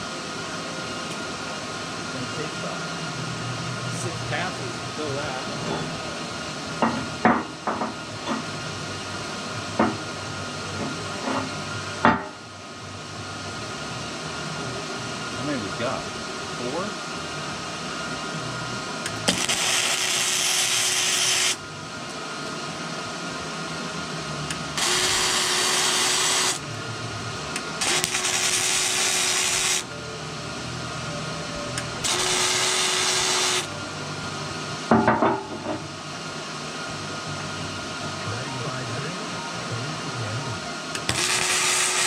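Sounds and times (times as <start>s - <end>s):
machine hum: 0.0s - 42.0s
wire-feed motor whining: 0.0s - 42.0s
welding arc crackling: 19.0s - 21.6s, 24.3s - 29.9s, 31.8s - 33.7s, 40.9s - 42.0s.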